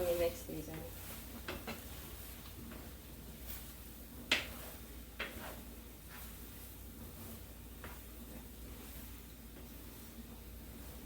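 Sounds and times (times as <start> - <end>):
utensil scraping a skillet: 0.0 - 11.0.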